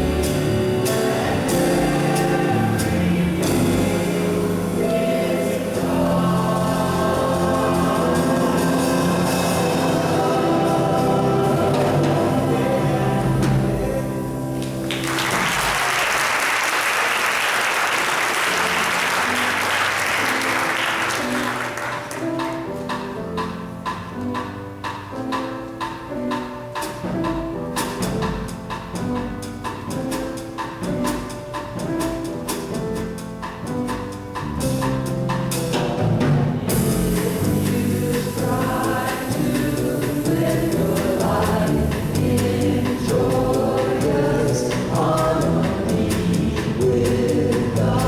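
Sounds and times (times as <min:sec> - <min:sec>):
gospel-style singing: 0:00.0 - 0:16.4, 0:35.9 - 0:48.0
audience clapping: 0:14.6 - 0:22.6.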